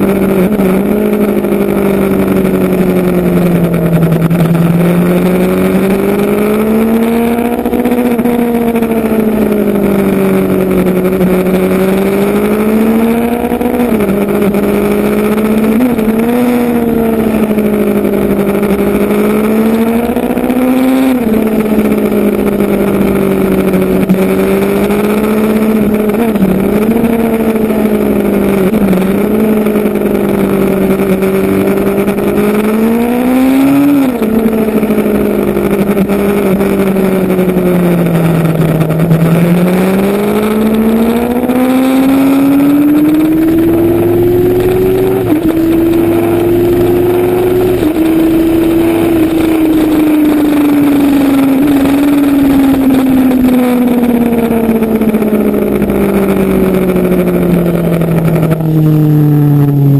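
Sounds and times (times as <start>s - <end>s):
motorcycle engine running: 0.0s - 59.9s
steady rushing noise: 0.0s - 59.9s.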